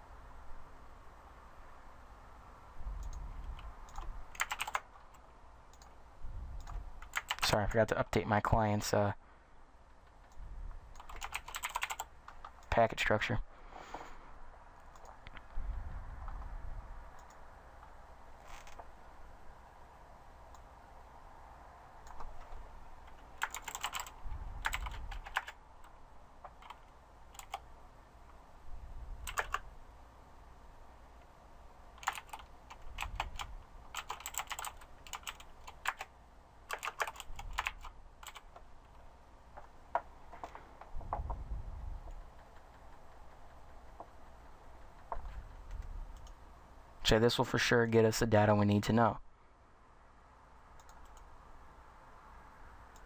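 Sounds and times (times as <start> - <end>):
keyboard typing: 3.0 - 6.0, 6.6 - 7.6, 10.2 - 12.7, 22.0 - 27.7, 29.2 - 29.6, 32.0 - 36.1, 36.7 - 39.0, 42.1 - 44.0.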